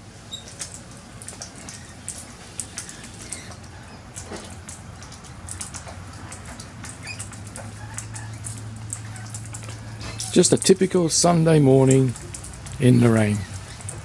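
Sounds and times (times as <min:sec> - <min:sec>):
light rain falling: 0:00.0 - 0:14.0.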